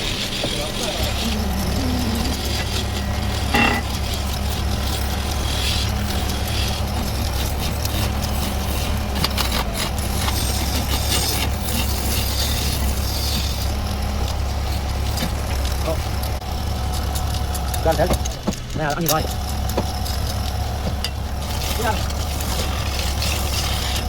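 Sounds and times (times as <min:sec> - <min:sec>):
wood lathe humming: 0:00.0 - 0:09.1.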